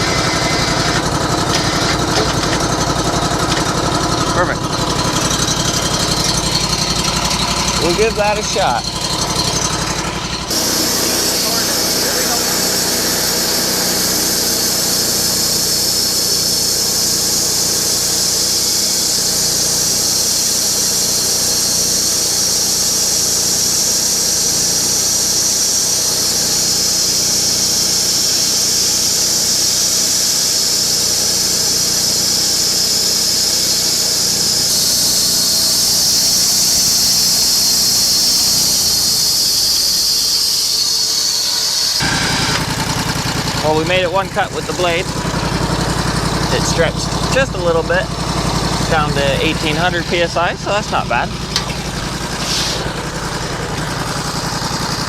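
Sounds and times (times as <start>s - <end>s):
band saw blade squealing hiss: 0.0s - 2.8s, 10.5s - 43.0s, 50.7s - 55.0s
engine running under load: 0.0s - 55.0s.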